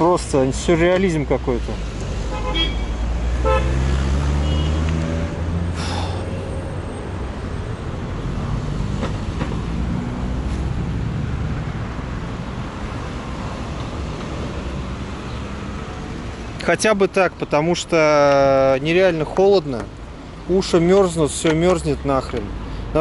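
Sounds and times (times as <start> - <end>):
passing traffic rumble: 0.0 - 23.0
heavy vehicle engine droning: 3.7 - 12.4.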